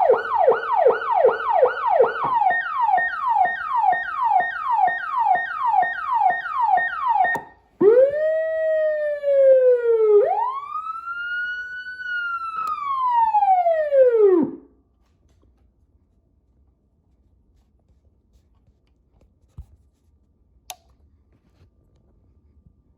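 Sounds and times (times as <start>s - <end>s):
electronic siren yelping: 0.0s - 14.6s.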